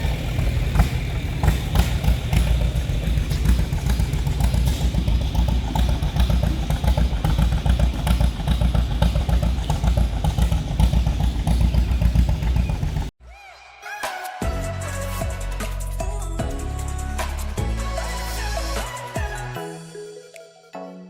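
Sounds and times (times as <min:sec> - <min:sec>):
engine rumbling and clattering: 0:00.0 - 0:13.2.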